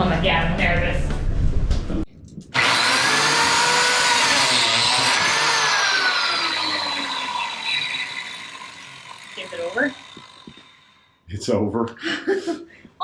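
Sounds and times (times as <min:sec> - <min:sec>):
biscuit joiner whining: 0:02.6 - 0:11.1.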